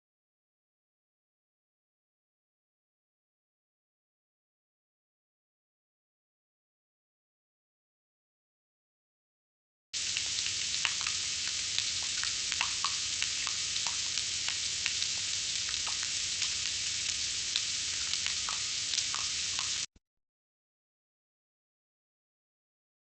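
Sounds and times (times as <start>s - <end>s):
food deep-frying in hot oil: 10.0s - 19.9s.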